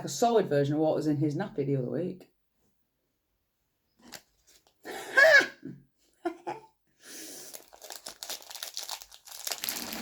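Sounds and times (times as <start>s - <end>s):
snack wrapper tearing and crinkling: 7.4s - 10.0s.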